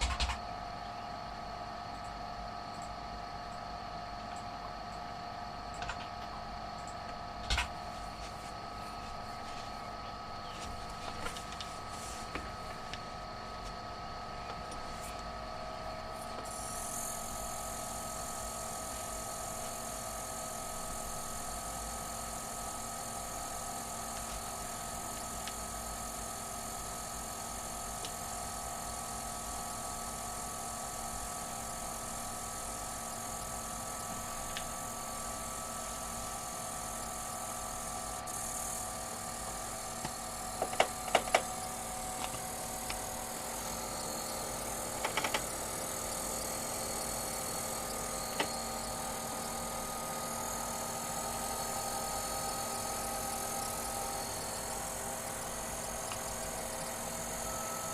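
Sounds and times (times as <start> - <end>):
graphics card whine: 0.0 - 57.9
high hiss: 16.4 - 57.9.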